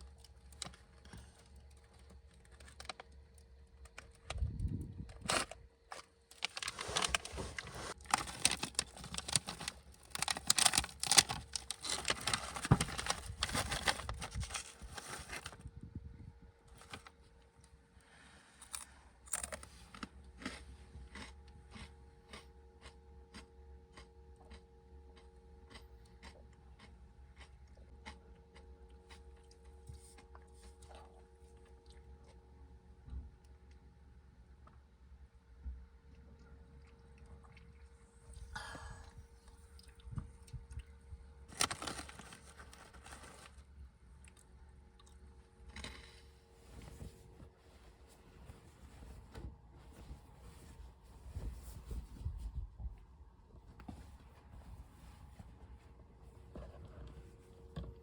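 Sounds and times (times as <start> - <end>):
faint steady hum: 0.0 - 58.0
plastic or paper crinkling: 5.2 - 15.7, 16.8 - 17.2, 41.5 - 43.7.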